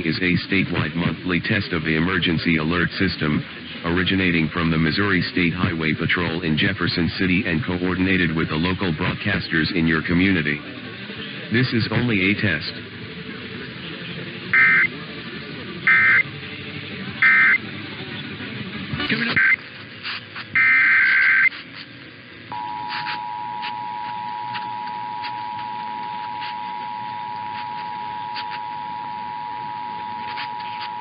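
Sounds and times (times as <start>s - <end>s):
digital data tone bursts: 14.5s - 14.9s, 15.8s - 16.3s, 17.2s - 17.6s, 19.0s - 19.7s, 20.5s - 21.6s, 22.5s - 31.0s
two-tone attention signal: 14.5s - 14.9s, 15.9s - 16.2s, 17.2s - 17.6s, 19.0s - 19.6s, 20.6s - 21.5s, 22.5s - 31.0s.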